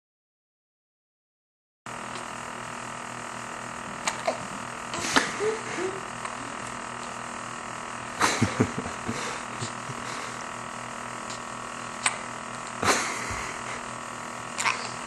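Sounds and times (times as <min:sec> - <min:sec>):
steady background hum: 0:01.9 - 0:15.0
person hiccuping: 0:04.0 - 0:06.7, 0:14.6 - 0:15.0.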